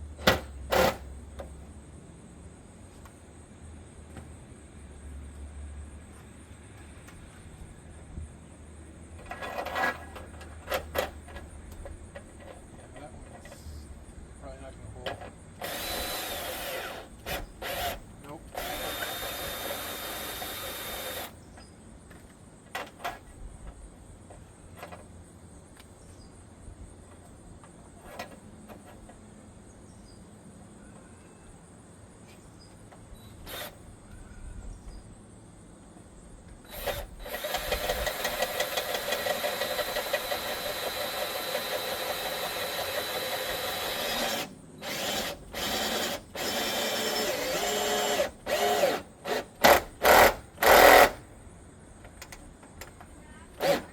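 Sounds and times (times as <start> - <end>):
power drill driving screws: 0.2 - 1.1, 15.6 - 21.4, 33.5 - 33.8, 36.7 - 51.2, 53.6 - 53.9.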